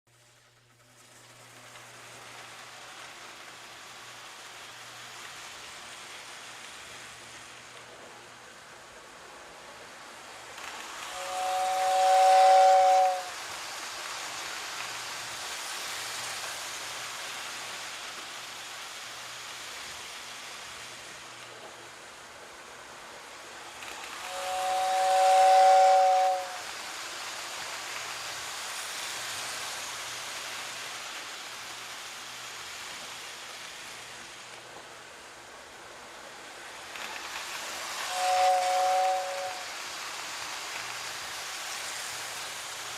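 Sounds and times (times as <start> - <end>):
steady hiss: 0.1 - 42.9
toy train two-note whistle: 10.6 - 13.4, 24.1 - 26.6, 38.0 - 39.7.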